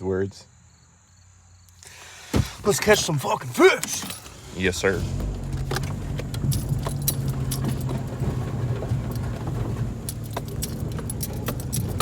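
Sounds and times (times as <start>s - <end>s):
engine and road hum: 1.8s - 12.0s
clinks and rattles: 2.4s - 12.0s.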